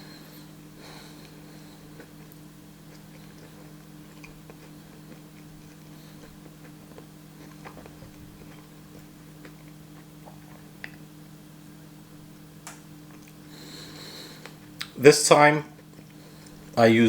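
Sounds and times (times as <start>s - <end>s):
steady low hum: 0.0s - 17.0s
chewing crunches: 1.2s - 11.1s, 13.1s - 15.0s, 15.7s - 16.8s.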